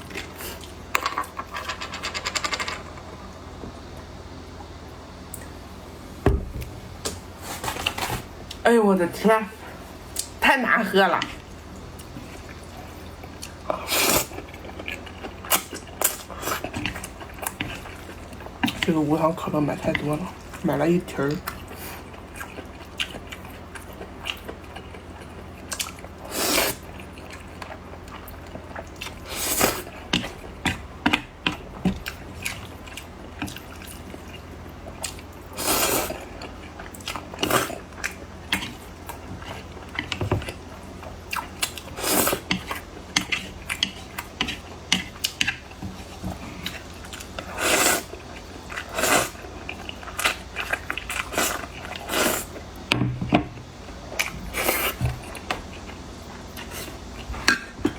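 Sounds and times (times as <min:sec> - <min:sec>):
steady low hum: 0:00.0 - 0:57.9
person chewing food: 0:21.4 - 0:52.9.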